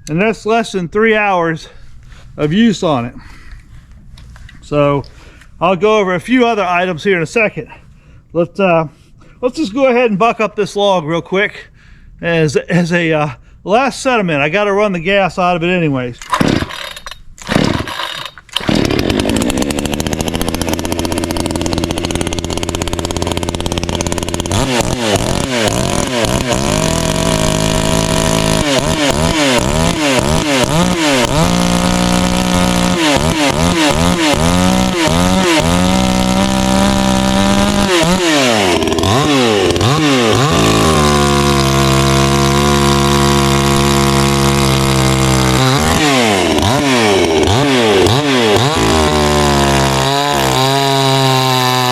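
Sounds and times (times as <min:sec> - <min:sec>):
chainsaw revving: 0:16.3 - 0:51.9.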